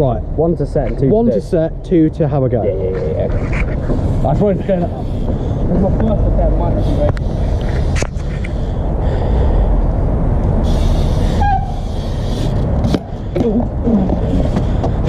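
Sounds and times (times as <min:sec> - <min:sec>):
bike rolling on concrete: 0:02.8 - 0:09.6, 0:10.3 - 0:15.0.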